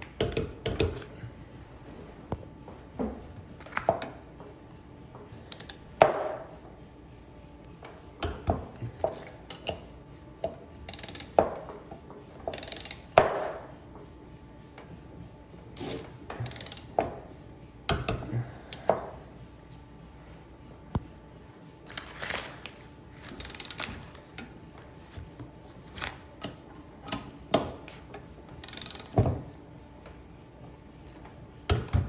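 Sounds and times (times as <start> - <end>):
ratchet wrench clicking: 5.5 - 5.9, 10.8 - 11.4, 12.5 - 13.1, 15.8 - 17.0, 23.4 - 23.9, 28.6 - 29.2.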